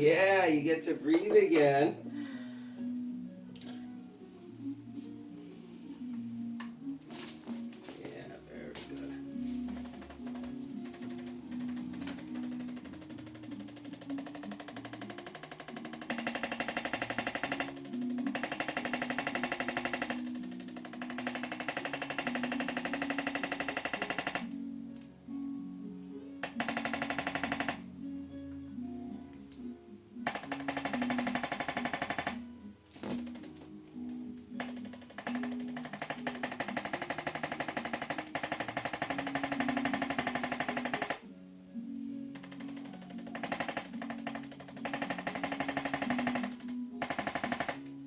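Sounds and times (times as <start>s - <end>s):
soft guitar music: 0.0s - 48.0s
rapid mechanical pulsing: 9.7s - 24.5s, 26.4s - 27.8s, 30.2s - 32.4s, 34.6s - 41.2s, 42.4s - 47.8s
rapid sharp taps: 9.7s - 24.5s, 26.4s - 27.8s, 30.2s - 32.4s, 33.0s - 41.2s, 42.4s - 47.9s.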